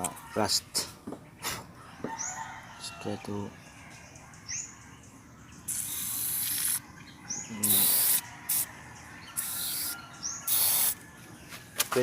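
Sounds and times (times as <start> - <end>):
aerosol spray hissing: 5.7 - 6.8, 7.6 - 8.7, 9.4 - 11.0.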